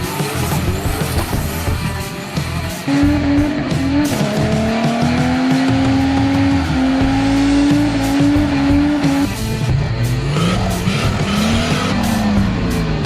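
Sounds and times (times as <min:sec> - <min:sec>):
car engine running: 0:00.0 - 0:13.0
car tyres squealing: 0:10.3 - 0:12.5.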